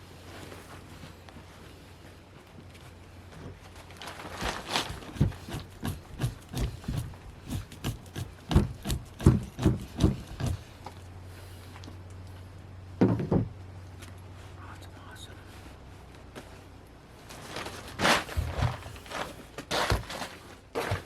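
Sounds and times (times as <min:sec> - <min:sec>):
tool scraping hide: 0:04.2 - 0:11.0, 0:17.3 - 0:21.0.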